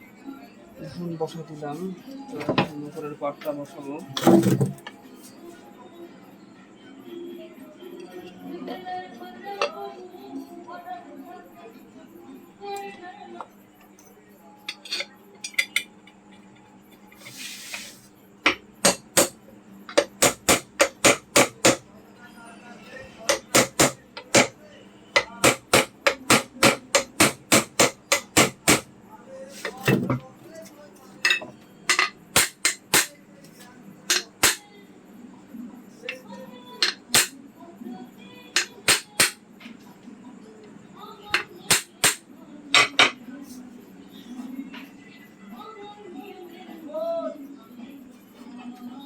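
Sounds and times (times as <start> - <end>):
metal scrape: 17.2 - 18.1
sharp knocks on metal: 18.5 - 19.4, 20.0 - 21.8, 23.3 - 24.5, 25.2 - 28.9, 34.1 - 34.6, 36.8 - 37.3, 38.6 - 39.4, 41.4 - 42.2
hammer tapping on metal: 18.5 - 21.8, 23.3 - 24.5, 25.2 - 28.9, 31.3 - 33.1, 34.1 - 34.6, 36.8 - 37.3, 38.6 - 39.4, 41.4 - 42.2, 42.8 - 43.2.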